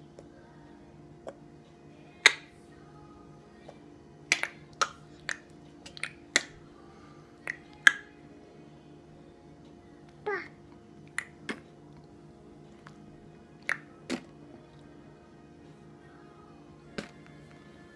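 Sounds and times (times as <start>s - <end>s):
faint steady background noise: 0.0s - 17.9s
tongue clicks: 4.3s - 6.5s, 7.4s - 8.0s, 11.1s - 12.1s, 13.6s - 14.3s.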